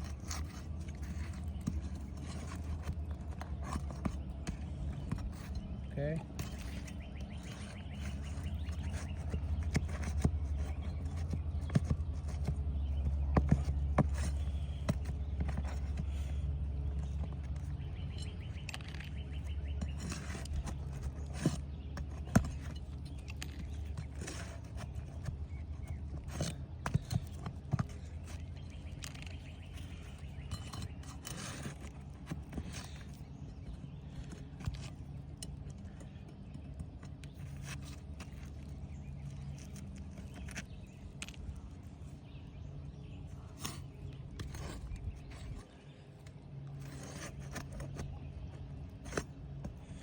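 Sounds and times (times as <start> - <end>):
pry tool clicks and scrapes: 43.4 - 45.6.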